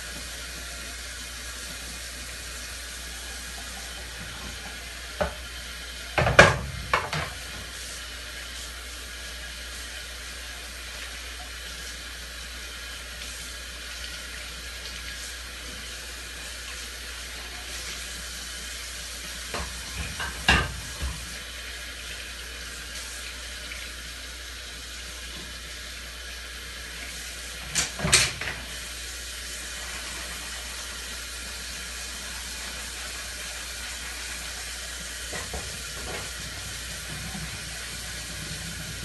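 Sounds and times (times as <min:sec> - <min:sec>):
tap water running into sink: 0:00.0 - 0:39.0
dishes clattering: 0:06.2 - 0:07.5, 0:19.6 - 0:21.3
dishes clinking: 0:19.6 - 0:21.1.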